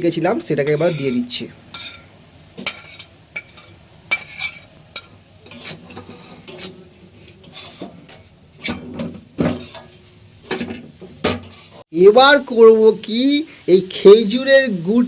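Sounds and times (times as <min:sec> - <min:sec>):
faint sizzle: 0:00.0 - 0:15.0
spatula scraping a pan: 0:00.3 - 0:11.9.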